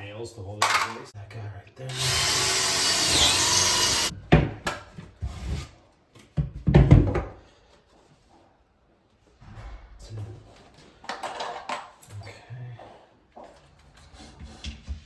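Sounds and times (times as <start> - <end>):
power tool running: 1.9 - 4.1.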